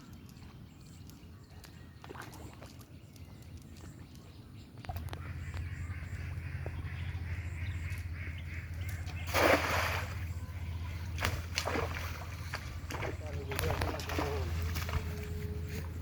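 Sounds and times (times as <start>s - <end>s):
steady low hum: 4.6s - 16.0s
water splashing: 9.0s - 16.0s.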